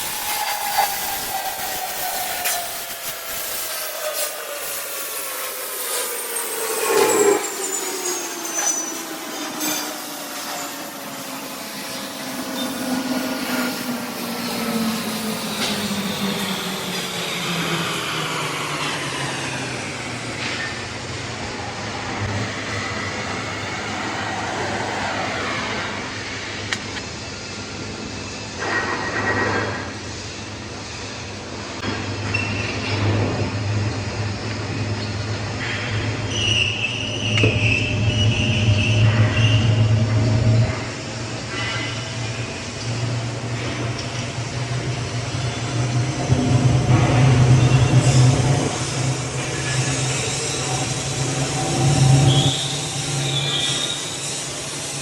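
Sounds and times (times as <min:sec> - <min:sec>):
welding arc hiss: 0:00.0 - 0:06.2.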